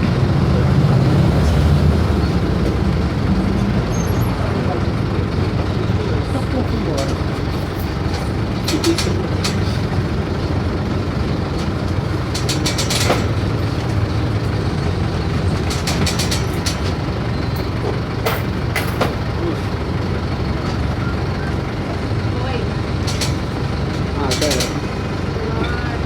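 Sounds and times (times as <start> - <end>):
diesel bus engine rumbling: 0.0 - 26.0
rattling clicks: 6.6 - 19.8, 22.9 - 25.8.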